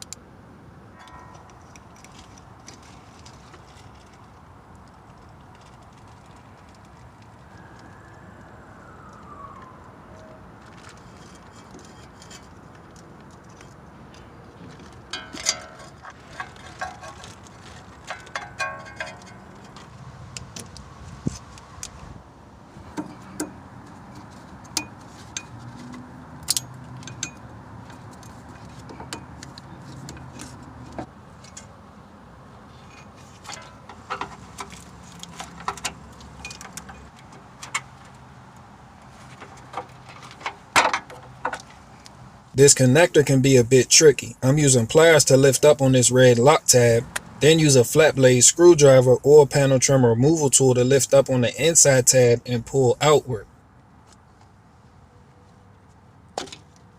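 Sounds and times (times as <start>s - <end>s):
hand tools clinking on metal: 15.1s - 19.8s.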